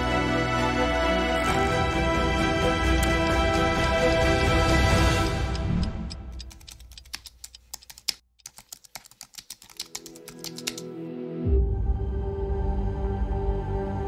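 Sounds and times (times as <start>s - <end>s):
music: 0.0s - 6.4s, 10.2s - 14.0s
sharp rapid clicks: 5.2s - 10.8s.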